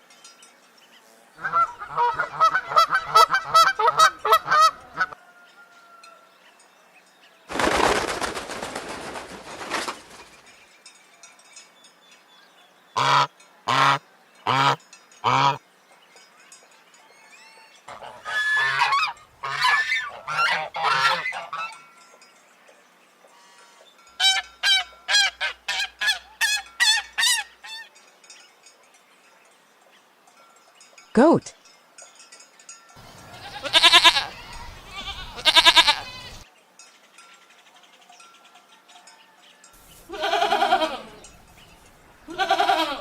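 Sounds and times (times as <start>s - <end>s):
geese honking: 1.4s - 5.2s, 13.0s - 15.6s, 17.9s - 21.8s.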